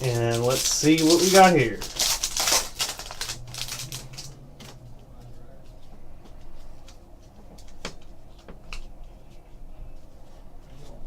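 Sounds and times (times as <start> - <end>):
trading cards being handled: 0.0 - 4.8.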